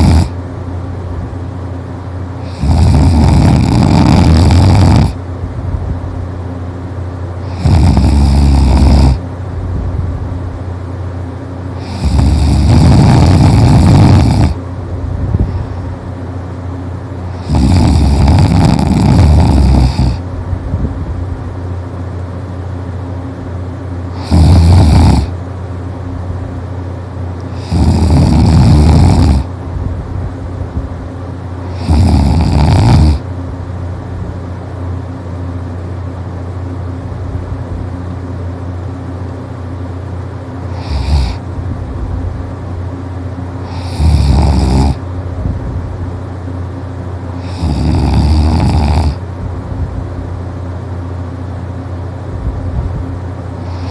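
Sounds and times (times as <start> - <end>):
person snoring loudly: 0.0 - 0.4, 2.4 - 5.2, 7.4 - 9.2, 11.8 - 14.6, 17.3 - 20.2, 24.1 - 25.4, 27.5 - 29.5, 31.7 - 33.2, 40.7 - 41.5, 43.6 - 45.0, 47.4 - 49.2, 53.6 - 53.9
steady low hum: 0.0 - 53.9.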